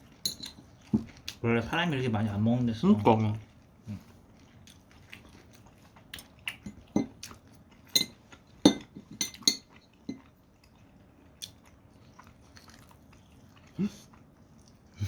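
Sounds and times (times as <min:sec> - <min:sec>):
utensils clinking against dishes: 0:00.2 - 0:00.7, 0:07.9 - 0:09.7.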